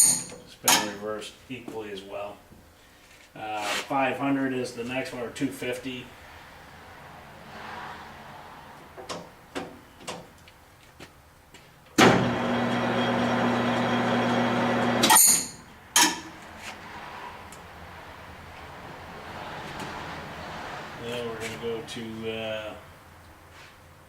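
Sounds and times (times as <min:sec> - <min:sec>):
lathe motor humming: 0:12.0 - 0:15.0.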